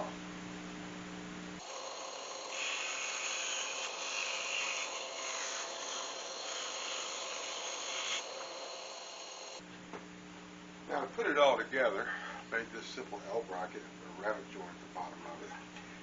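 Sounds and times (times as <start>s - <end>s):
saw cutting acrylic: 1.6s - 9.6s.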